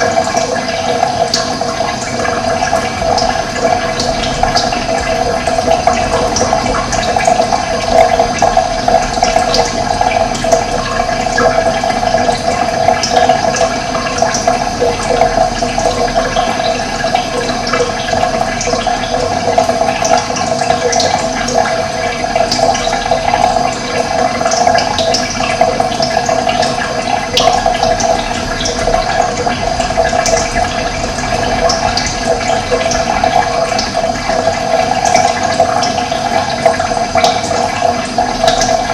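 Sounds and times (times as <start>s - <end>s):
running water rushing: 0.0s - 38.9s.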